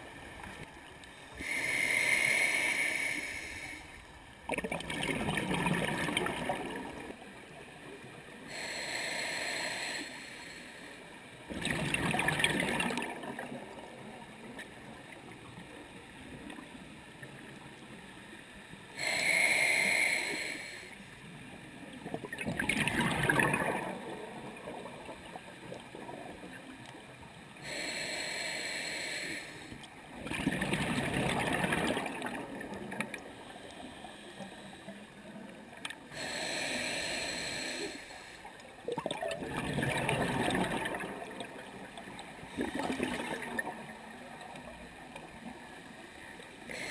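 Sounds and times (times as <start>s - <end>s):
regulator hissing inhales: 1.4s - 4.0s, 8.5s - 10.9s, 19.0s - 21.0s, 27.6s - 29.8s, 36.1s - 38.5s, 46.6s - 46.9s
bubbling exhales underwater: 4.5s - 7.0s, 11.5s - 13.5s, 22.3s - 25.2s, 30.2s - 33.0s, 38.9s - 41.6s.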